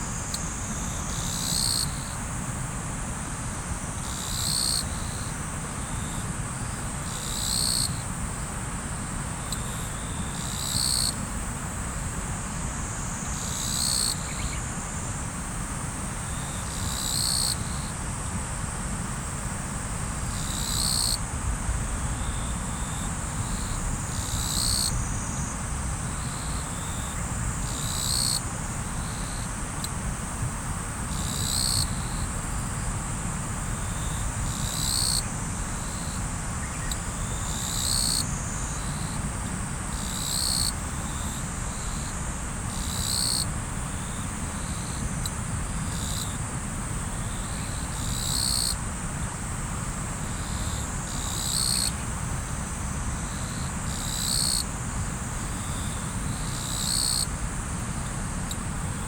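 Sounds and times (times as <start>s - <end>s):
high insect trill: 0.0s - 3.0s, 3.7s - 59.0s.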